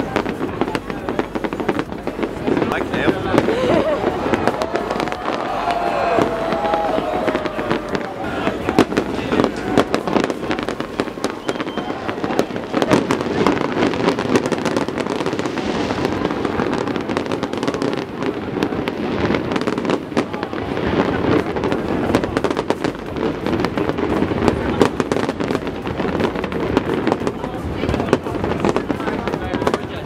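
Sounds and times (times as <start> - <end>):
crowd hubbub: 0.0 - 30.0
fireworks bangs and crackles: 0.0 - 30.0.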